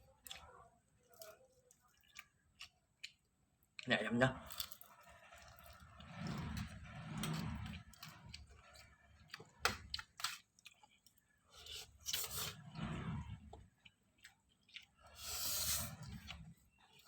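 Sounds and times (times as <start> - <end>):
person chewing with wet smacks: 0.0 - 3.9, 9.3 - 11.3, 13.7 - 15.3.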